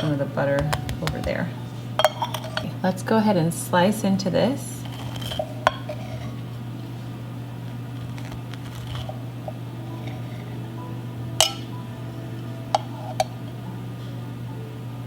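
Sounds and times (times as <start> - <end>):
steady low hum: 0.0 - 15.0
utensil clinking on cake pan: 2.0 - 2.8, 11.4 - 11.7.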